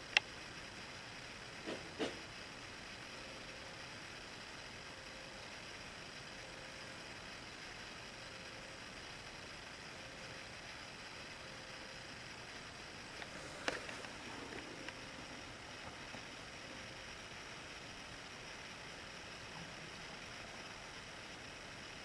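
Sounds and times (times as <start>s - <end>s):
faint ticks: 0.0s - 0.3s
room tone hiss: 0.0s - 22.0s.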